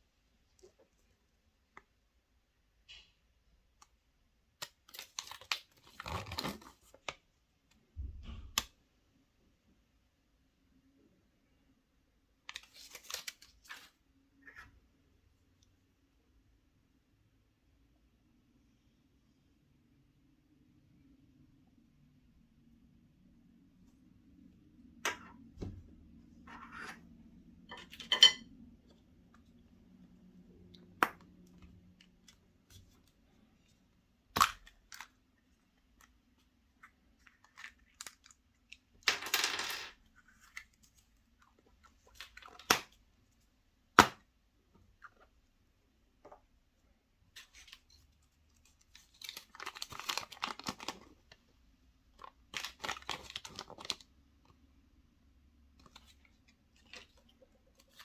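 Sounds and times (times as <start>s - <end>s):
foil wrapper crinkling: 49.0s - 51.1s.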